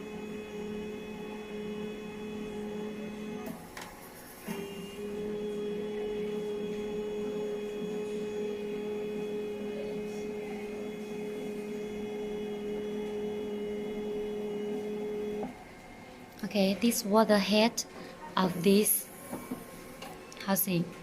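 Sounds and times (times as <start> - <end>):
autofocus motor humming: 0.0 - 16.4.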